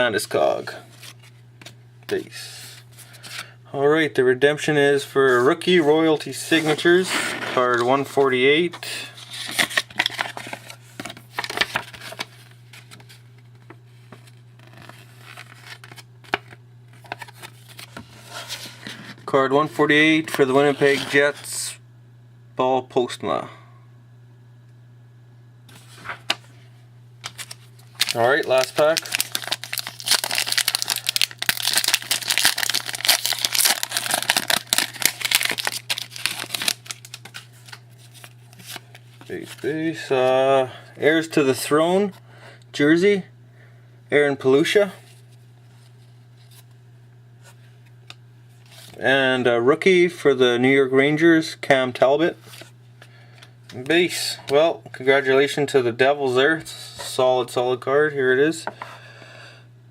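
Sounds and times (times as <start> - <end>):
trading cards rustling: 5.2 - 13.2, 13.9 - 19.0, 27.2 - 39.8
plastic wrapper tearing and crinkling: 27.2 - 39.6.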